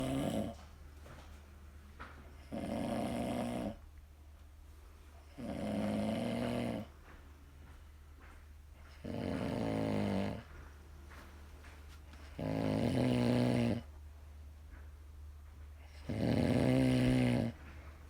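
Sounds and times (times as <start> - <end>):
man snoring: 0.0 - 0.6, 2.5 - 3.8, 5.4 - 6.9, 9.0 - 10.4, 12.4 - 13.9, 16.0 - 17.6.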